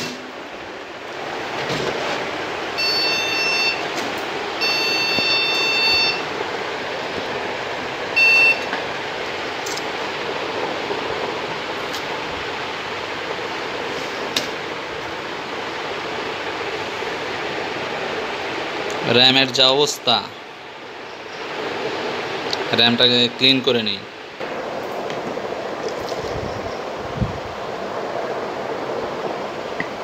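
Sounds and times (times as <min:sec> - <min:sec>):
computer fans whirring: 0:00.0 - 0:30.0
motherboard beeps: 0:02.8 - 0:03.8, 0:04.6 - 0:06.3, 0:08.2 - 0:08.7.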